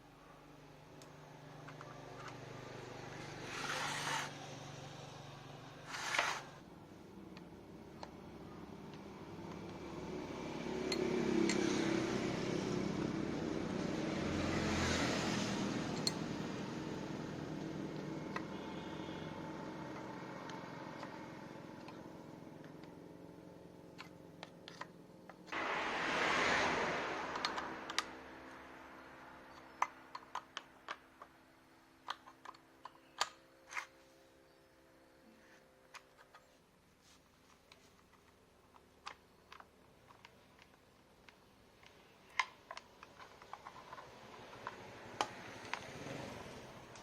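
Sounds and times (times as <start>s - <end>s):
small motor humming: 3.0s - 6.6s
faint steady hum: 15.6s - 47.0s
rushing noise: 25.6s - 29.3s.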